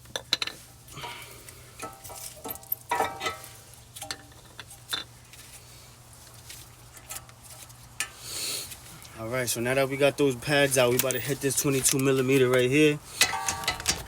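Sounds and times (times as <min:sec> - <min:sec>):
metallic clicks of brake pads: 0:00.1 - 0:05.1, 0:10.8 - 0:14.0
short ringing knocks: 0:13.2 - 0:14.0.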